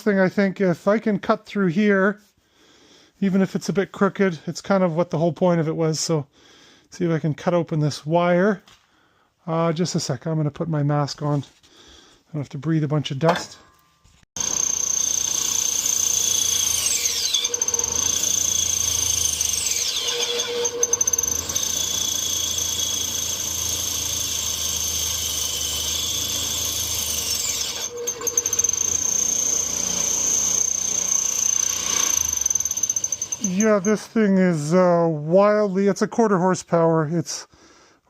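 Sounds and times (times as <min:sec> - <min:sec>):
motor hum: 0:14.4 - 0:33.4
saw squeals falling in pitch: 0:14.4 - 0:34.2
bandsaw whining: 0:14.4 - 0:34.8.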